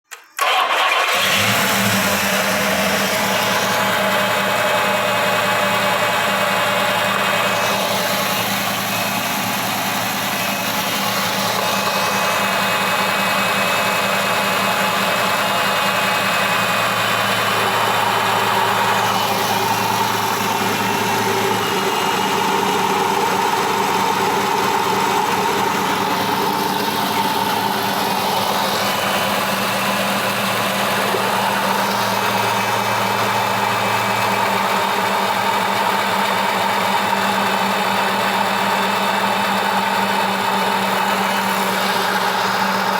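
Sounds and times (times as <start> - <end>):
car engine idling: 0.4 - 42.9
belt drive whirring: 17.0 - 30.1.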